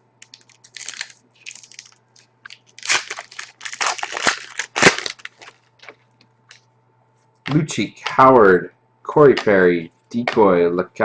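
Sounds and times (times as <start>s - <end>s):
foil wrapper tearing and crinkling: 0.2s - 5.9s
cards rustling: 0.2s - 6.0s.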